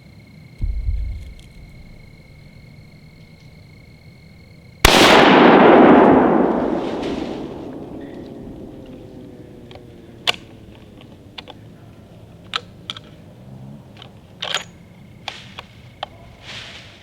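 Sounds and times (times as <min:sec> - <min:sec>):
rifle shot echo: 0:00.6 - 0:03.4, 0:04.8 - 0:11.2.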